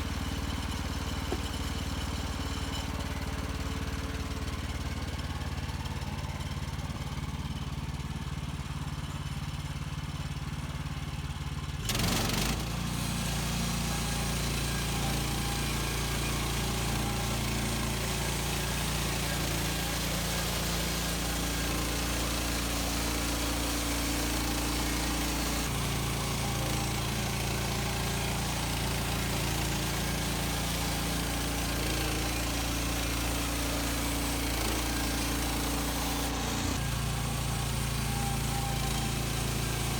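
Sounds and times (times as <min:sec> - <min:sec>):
band blade sawing through log: 0:00.0 - 0:03.1, 0:11.9 - 0:39.9
sawmill engine running: 0:00.0 - 0:39.9.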